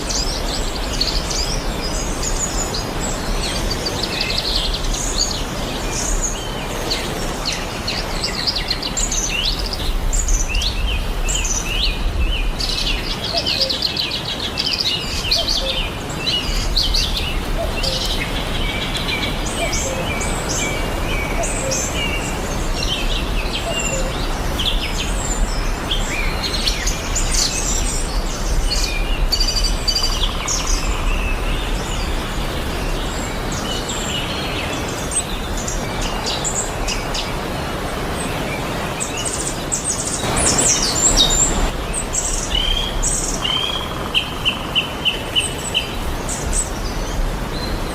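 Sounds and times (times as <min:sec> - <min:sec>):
small birds chirping and singing: 0:00.0 - 0:47.9
rush of noise: 0:37.5 - 0:44.1
background hiss: 0:39.4 - 0:43.6.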